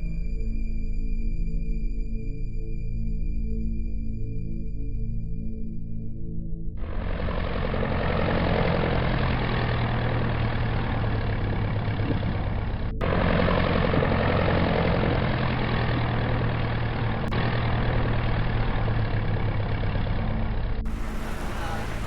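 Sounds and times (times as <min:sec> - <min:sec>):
vehicle engine rumble: 0:06.8 - 0:22.0.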